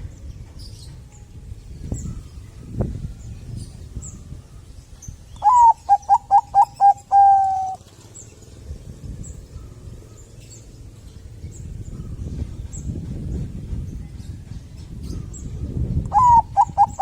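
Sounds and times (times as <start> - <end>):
dove cooing: 5.4 - 7.9, 16.1 - 17.0.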